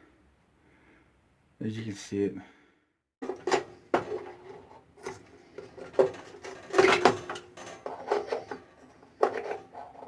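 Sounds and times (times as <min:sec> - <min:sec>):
knocks and rattles of handling: 0:03.2 - 0:10.0.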